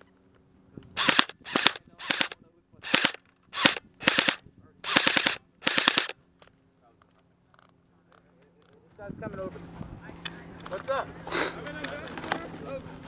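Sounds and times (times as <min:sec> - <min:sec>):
airsoft guns firing automatic bursts: 0:01.0 - 0:06.2.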